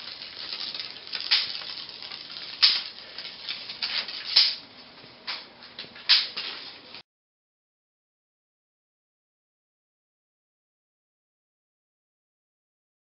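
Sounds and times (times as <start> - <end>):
vinyl flooring and tape crinkling: 0.0 - 7.0.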